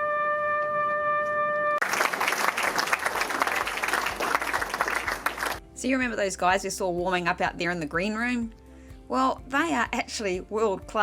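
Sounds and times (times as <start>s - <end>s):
trumpet holding long note: 0.0s - 1.8s
audience applause: 1.8s - 5.6s.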